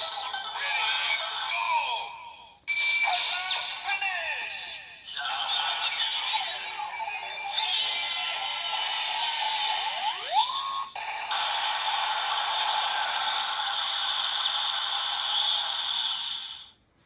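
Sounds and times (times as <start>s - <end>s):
toy electronic sound effects: 0.0s - 2.1s, 2.7s - 16.8s.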